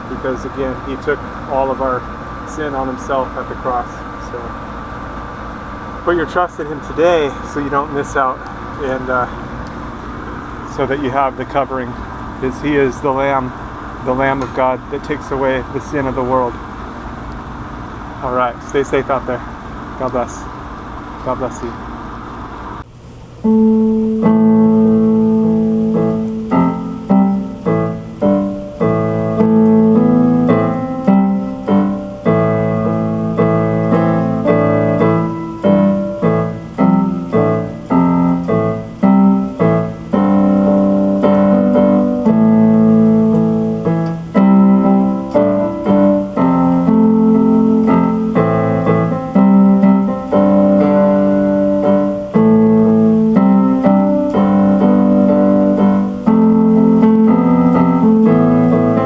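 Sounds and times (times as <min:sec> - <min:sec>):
piano chords and melody: 0:23.4 - 0:59.0.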